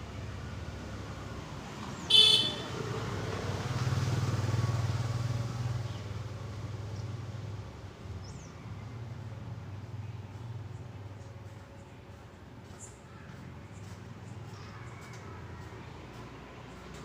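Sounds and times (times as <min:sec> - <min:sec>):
short sharp horn toot: 0:02.1 - 0:02.6.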